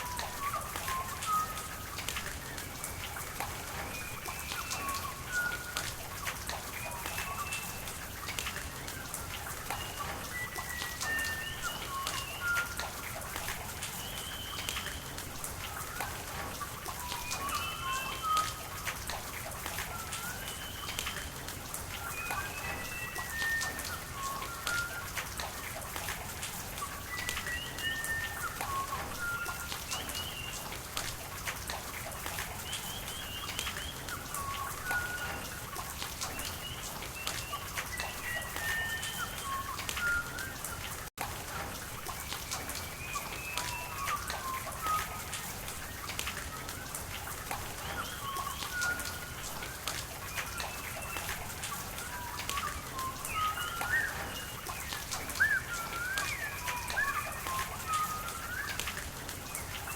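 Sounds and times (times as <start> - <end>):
steady rain: 0.0 - 59.9
water dripping and running: 0.0 - 59.9
birds whistling: 36.3 - 40.8, 47.6 - 59.9.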